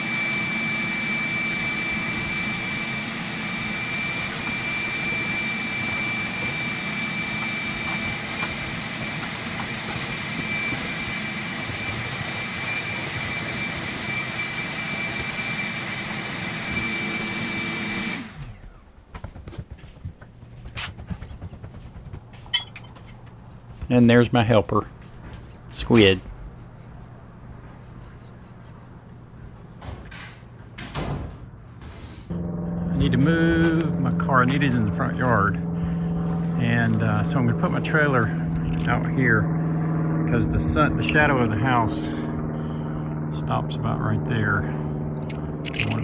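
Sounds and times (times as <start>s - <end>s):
vacuum cleaner running: 0.0s - 30.9s, 32.3s - 43.9s, 44.6s - 46.0s.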